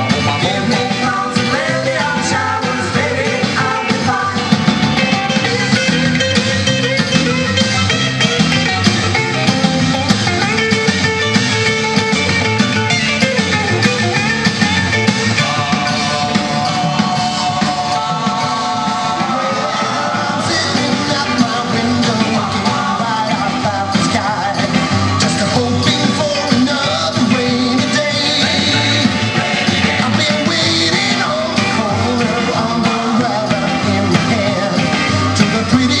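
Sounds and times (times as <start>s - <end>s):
rock and roll song on jukebox: 0.0s - 36.0s.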